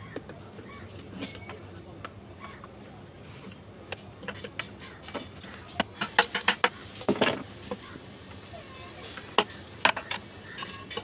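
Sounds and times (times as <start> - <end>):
sharp clicks and knocks: 3.4 - 7.8.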